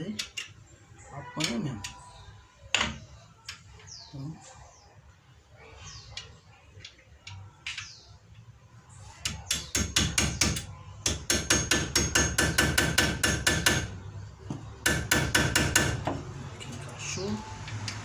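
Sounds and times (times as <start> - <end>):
hammer striking metal: 9.5 - 14.0, 14.8 - 16.2.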